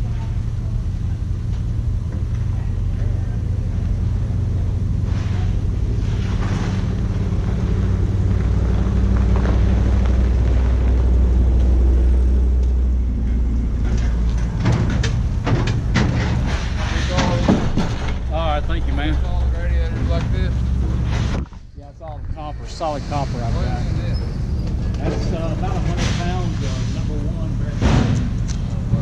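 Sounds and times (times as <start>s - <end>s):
vehicle engine running: 0.0s - 29.0s
sharp clicks and knocks: 12.6s - 18.3s.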